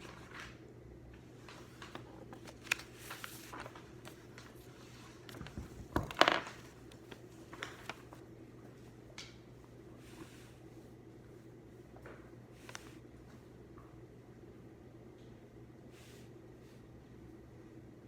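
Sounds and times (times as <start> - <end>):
low room hum: 0.0 - 18.0
paper rustling: 1.4 - 8.2.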